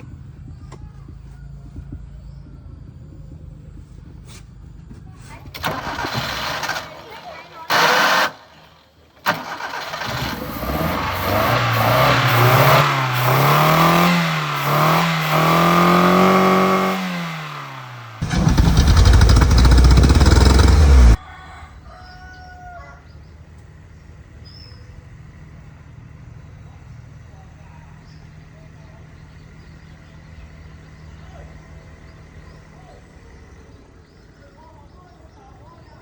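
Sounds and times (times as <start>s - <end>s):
truck engine revving: 5.5s - 21.2s
rooster crowing: 21.2s - 23.2s.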